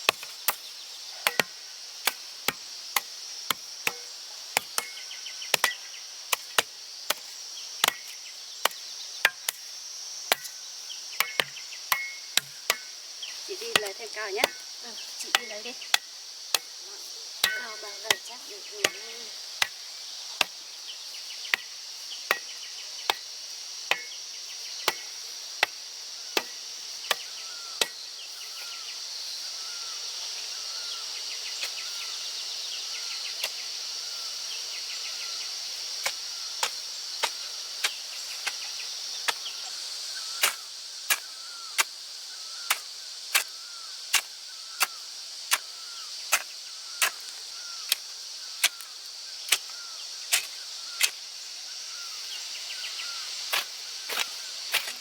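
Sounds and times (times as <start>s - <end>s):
hand tool chopping strikes: 1.2s - 7.2s, 11.2s - 12.9s, 17.4s - 19.0s, 23.9s - 24.2s.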